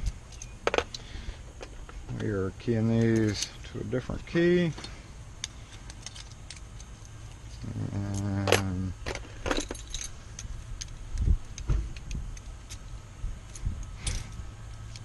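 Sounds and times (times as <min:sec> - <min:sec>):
low steady hum: 0:00.0 - 0:15.0
metal lock parts clicking: 0:00.0 - 0:15.0
keys jingling: 0:02.8 - 0:03.6, 0:05.6 - 0:15.0.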